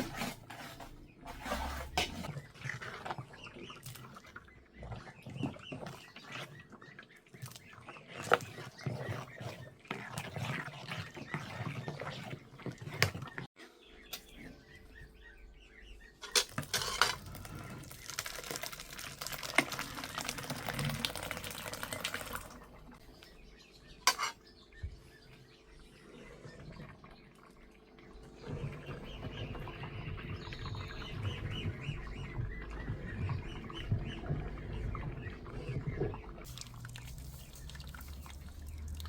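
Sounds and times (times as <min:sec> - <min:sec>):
water running: 0:17.2 - 0:23.0, 0:28.9 - 0:39.0.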